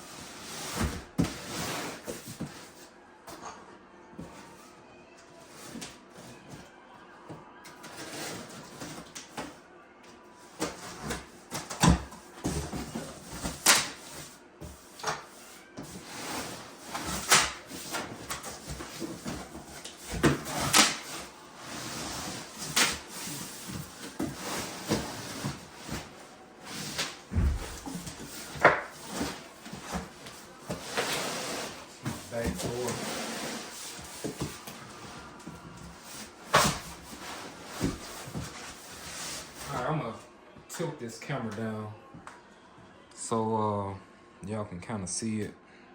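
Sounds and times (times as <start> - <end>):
cardboard scraping and rustling: 7.8 - 9.6, 10.5 - 39.9.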